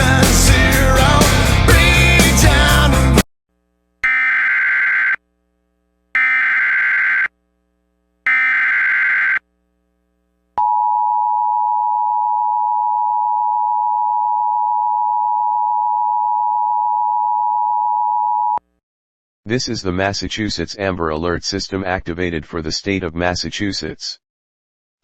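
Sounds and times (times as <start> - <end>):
rasping digital data tones: 4.0 - 5.2, 6.2 - 7.3, 8.3 - 9.4.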